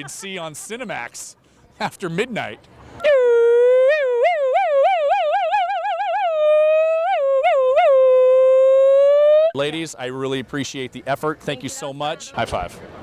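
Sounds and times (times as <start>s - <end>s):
woman holding high vocal note: 3.0s - 9.6s.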